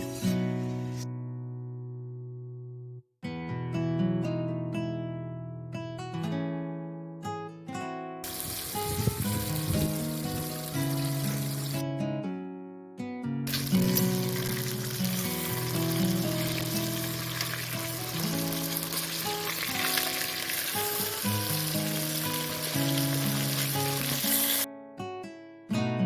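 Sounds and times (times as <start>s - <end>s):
food sizzling in hot oil: 8.2s - 11.8s, 13.5s - 24.7s.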